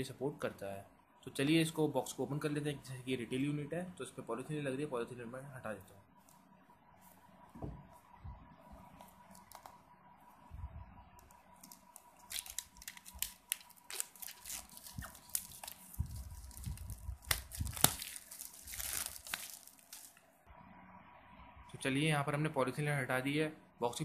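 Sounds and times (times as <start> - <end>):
plastic film crinkling: 11.2 - 20.2
plastic film snapping: 11.2 - 20.2.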